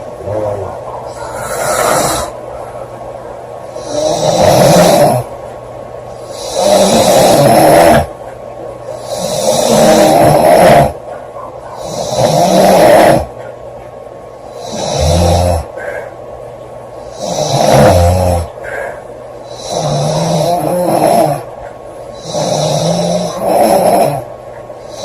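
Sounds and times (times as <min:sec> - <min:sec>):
quiet breathing: 0:00.9 - 0:04.2, 0:15.6 - 0:16.4, 0:18.4 - 0:20.8
woman snoring: 0:01.1 - 0:02.4, 0:03.8 - 0:05.3, 0:06.2 - 0:08.1, 0:09.0 - 0:11.0, 0:11.8 - 0:13.3, 0:14.6 - 0:15.7, 0:17.2 - 0:18.5, 0:19.5 - 0:21.4, 0:22.2 - 0:24.2.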